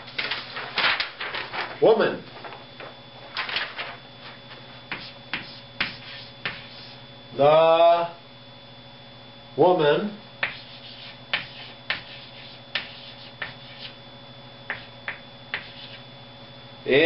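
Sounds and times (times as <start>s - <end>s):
writing on a board: 4.9s - 7.0s, 10.4s - 14.0s, 14.7s - 16.0s.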